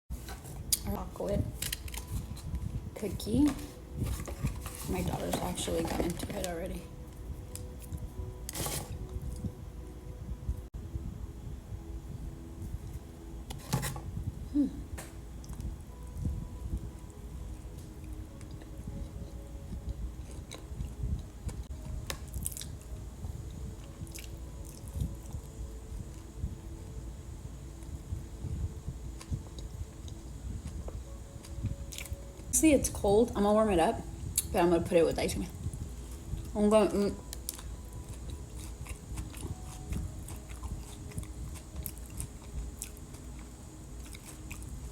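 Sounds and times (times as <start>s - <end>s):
biting and chewing cookie: 37.4s - 44.9s.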